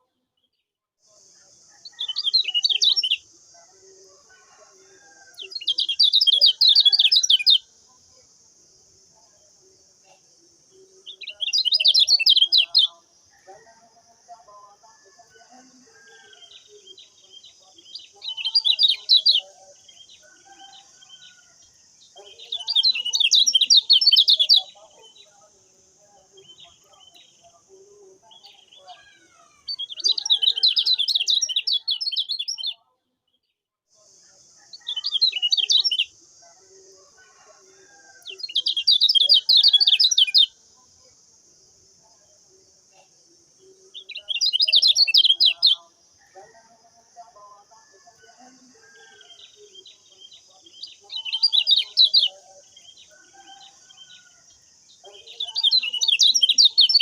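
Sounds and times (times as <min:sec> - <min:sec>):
bird chirping rapidly: 0:05.5 - 0:07.6, 0:44.0 - 0:45.8.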